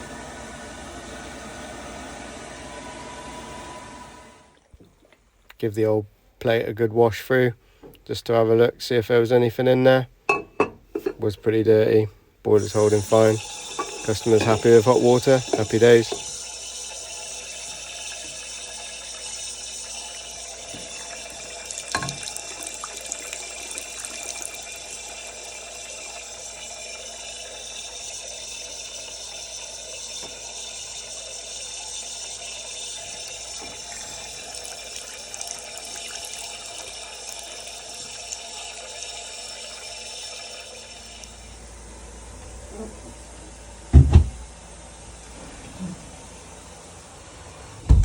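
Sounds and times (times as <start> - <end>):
water running from a tap: 12.5 - 41.6
knock: 43.9 - 44.4.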